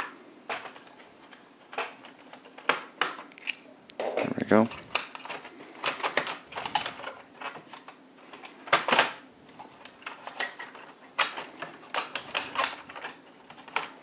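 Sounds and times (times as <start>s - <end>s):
plastic and metal parts clattering: 0.0s - 14.0s.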